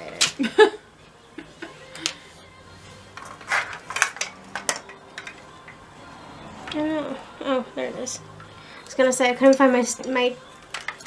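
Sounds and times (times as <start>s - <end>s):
plastic objects clicking: 3.2s - 5.4s.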